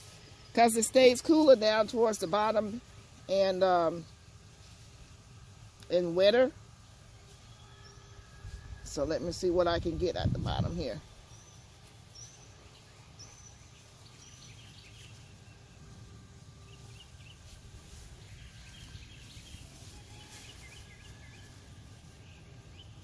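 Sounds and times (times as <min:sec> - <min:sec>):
faint birds chirping: 0:11.0 - 0:23.0.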